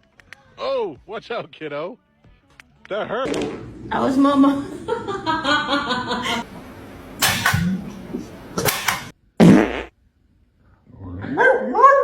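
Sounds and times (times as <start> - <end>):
voice: 2.9 - 4.9
fart noises: 9.4 - 9.9.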